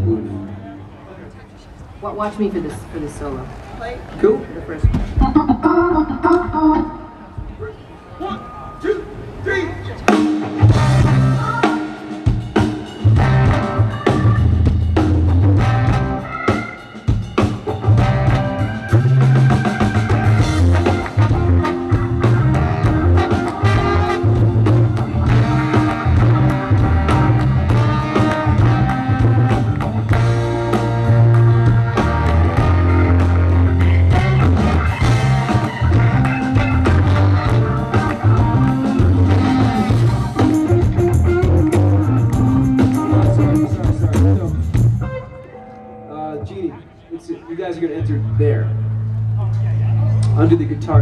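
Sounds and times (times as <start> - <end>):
live rock band playing: 0.0 - 0.9, 4.8 - 7.6, 9.2 - 51.0
organ solo: 5.2 - 7.3, 17.8 - 46.9.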